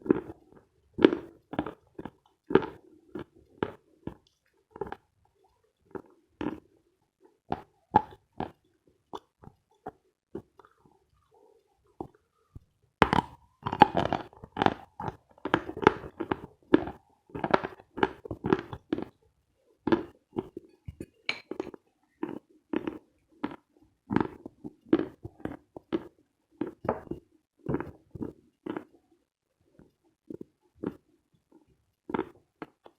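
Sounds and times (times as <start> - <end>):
chewing chalk crunches: 13.0 - 19.2, 19.9 - 29.0.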